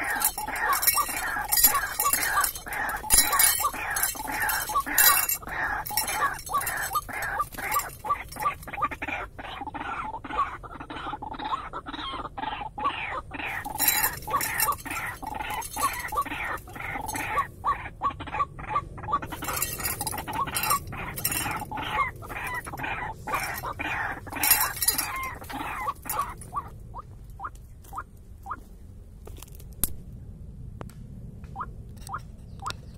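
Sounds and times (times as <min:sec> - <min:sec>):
rustling noise: 0:00.0 - 0:08.8
waterhen calling: 0:00.0 - 0:26.7.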